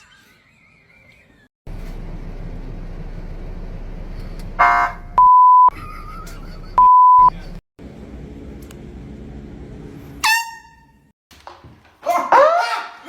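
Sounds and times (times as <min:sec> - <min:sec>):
background rumble: 0:01.7 - 0:07.6
air horn blast: 0:04.6 - 0:05.1
censor bleeps: 0:05.2 - 0:05.8, 0:06.8 - 0:07.3.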